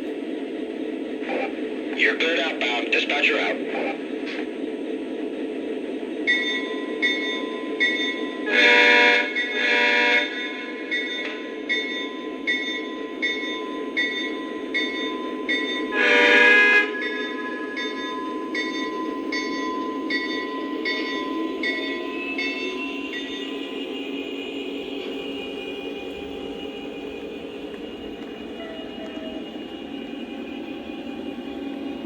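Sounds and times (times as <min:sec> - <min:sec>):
locomotive bell ringing: 0:06.3 - 0:32.0
horn blasts: 0:08.5 - 0:10.5, 0:15.9 - 0:17.0.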